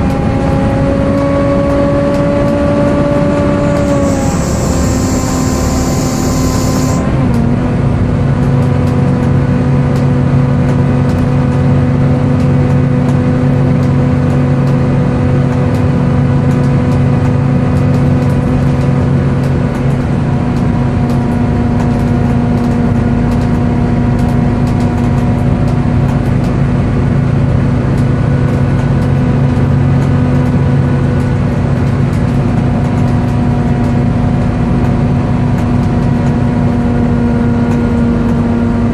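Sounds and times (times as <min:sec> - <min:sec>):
bus engine whine: 0:00.0 - 0:38.9.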